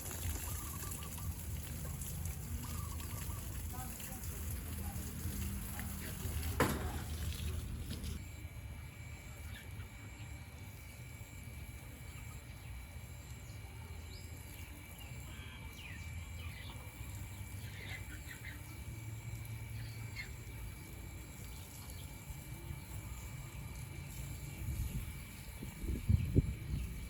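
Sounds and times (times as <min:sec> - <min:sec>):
faint bird chirps: 0:00.4 - 0:02.0, 0:02.6 - 0:03.6.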